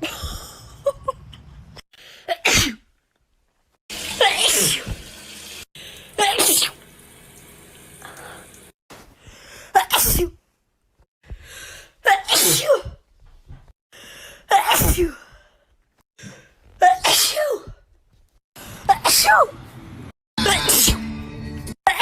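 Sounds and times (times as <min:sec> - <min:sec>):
person sneezing wetly: 0:02.2 - 0:02.8, 0:04.2 - 0:05.0, 0:06.2 - 0:06.8, 0:09.8 - 0:10.4, 0:12.1 - 0:13.0, 0:14.5 - 0:15.2, 0:16.8 - 0:17.8.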